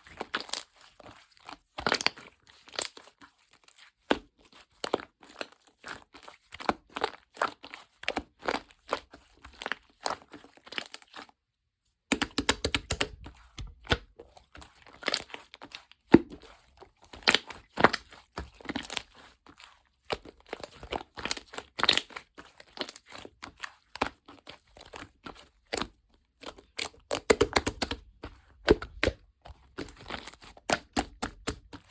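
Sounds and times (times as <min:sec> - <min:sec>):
slime squished by hand: 0:12.1 - 0:31.9.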